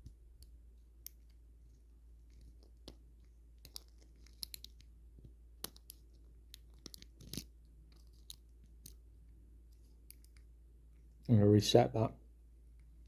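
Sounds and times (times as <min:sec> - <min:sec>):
lock pick clicks and scratches: 0:02.3 - 0:04.9, 0:05.6 - 0:09.0, 0:10.0 - 0:10.5.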